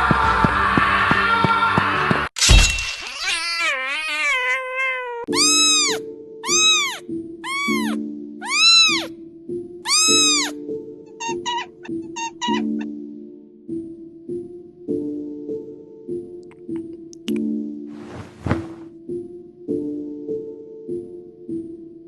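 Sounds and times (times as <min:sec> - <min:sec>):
kitten meowing: 0:03.2 - 0:09.1, 0:09.9 - 0:12.8.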